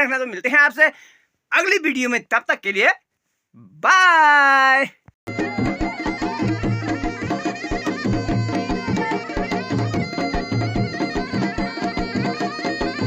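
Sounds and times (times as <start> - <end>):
regular drum beat: 5.3 - 13.0.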